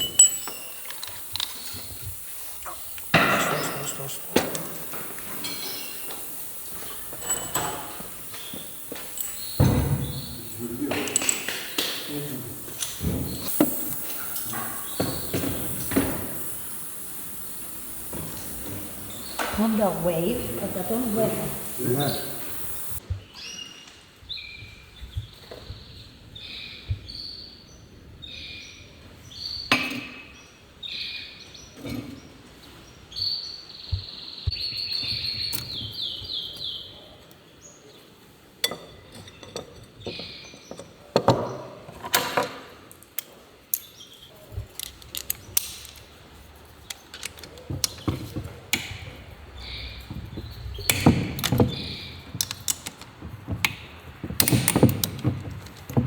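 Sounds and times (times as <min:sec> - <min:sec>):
small birds chirping: 0:00.0 - 0:23.6, 0:30.4 - 0:38.2, 0:43.8 - 0:56.0.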